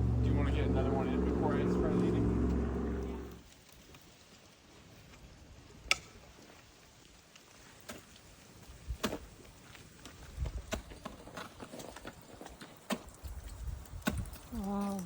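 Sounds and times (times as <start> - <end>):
wind rumble on microphone: 13.2 - 15.0.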